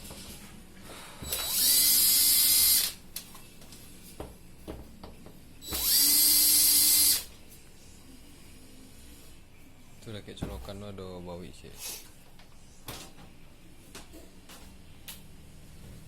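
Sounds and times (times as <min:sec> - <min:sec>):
power drill whirring: 0:01.2 - 0:03.0, 0:05.6 - 0:07.3.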